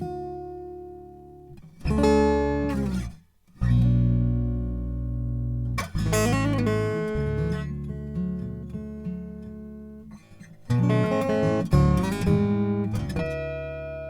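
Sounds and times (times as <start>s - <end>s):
acoustic guitar chords: 0.0s - 14.0s.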